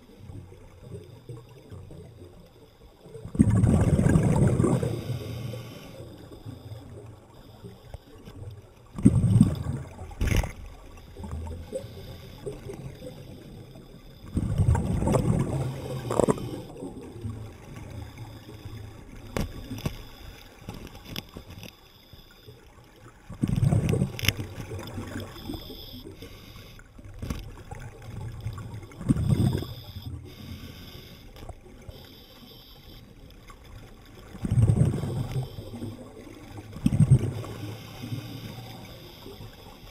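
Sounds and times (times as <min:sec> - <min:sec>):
low underwater background noise: 0:00.0 - 0:39.9
underwater bubble bursts: 0:03.0 - 0:05.4, 0:08.3 - 0:19.8, 0:23.2 - 0:26.2, 0:27.0 - 0:30.3, 0:33.7 - 0:39.5.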